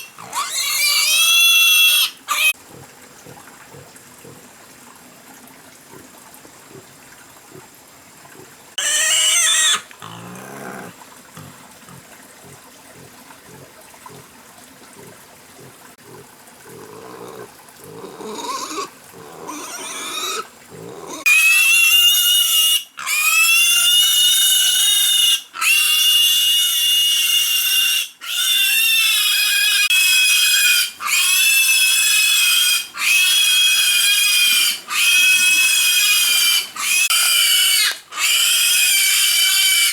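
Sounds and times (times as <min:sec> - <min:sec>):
wild boar squealing shrilly: 0:00.0 - 0:02.6, 0:08.8 - 0:11.6, 0:16.7 - 0:39.9
wild boar grunting: 0:02.3 - 0:04.5, 0:09.8 - 0:14.3, 0:15.0 - 0:21.4.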